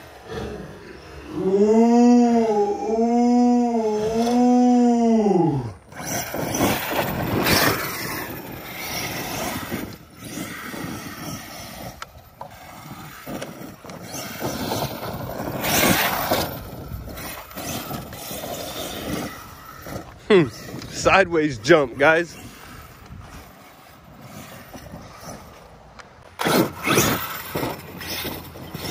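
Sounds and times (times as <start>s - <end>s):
wind on microphone: 0.6s - 25.5s.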